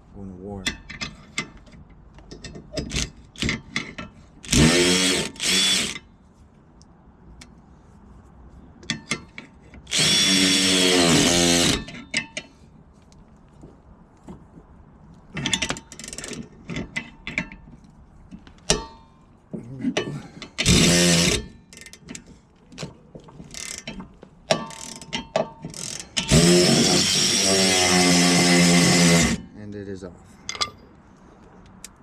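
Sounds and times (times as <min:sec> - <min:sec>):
clicks and knocks of metal tools: 0:00.6 - 0:04.2, 0:08.8 - 0:09.8, 0:11.8 - 0:13.2, 0:15.1 - 0:19.2, 0:19.9 - 0:26.4, 0:30.4 - 0:30.9
cordless power tool running: 0:04.5 - 0:06.0, 0:09.9 - 0:11.8, 0:26.3 - 0:29.4.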